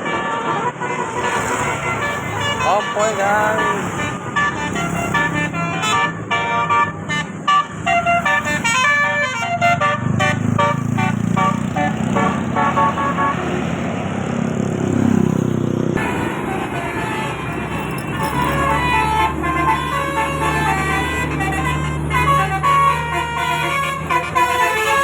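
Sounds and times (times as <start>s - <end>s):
bus musical horn tune: 0.0s - 13.7s, 16.0s - 25.0s
heavy vehicle engine rumble: 0.0s - 25.0s.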